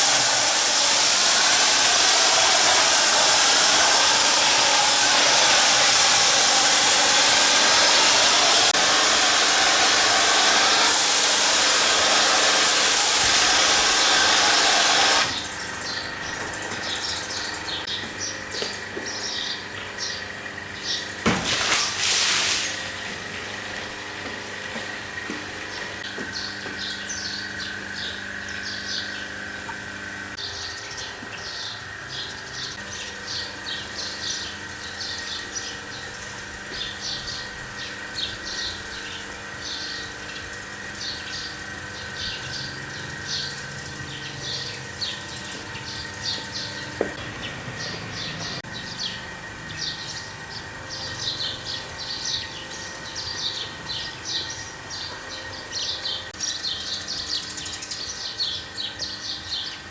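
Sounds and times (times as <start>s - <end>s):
small birds chirping: 15.3s - 21.2s, 25.7s - 59.9s.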